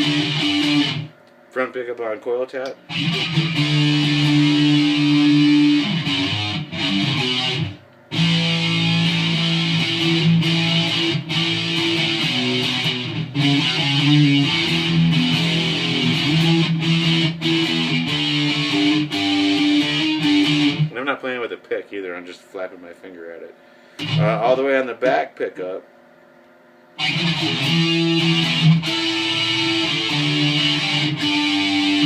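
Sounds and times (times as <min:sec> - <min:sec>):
electric guitar fingerpicked: 0:00.0 - 0:01.1, 0:02.7 - 0:20.9, 0:24.0 - 0:24.6, 0:27.0 - 0:32.0.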